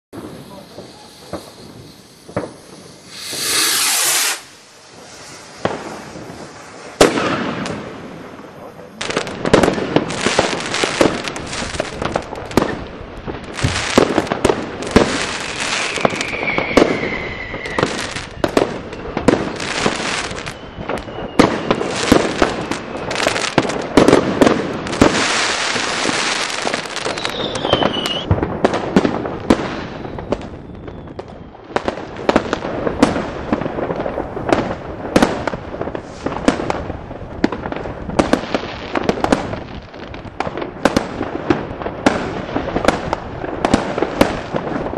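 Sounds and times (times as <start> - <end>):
firecrackers bangs and crackles: 0.1 - 44.9
whistling rockets: 0.2 - 7.9, 13.6 - 36.8.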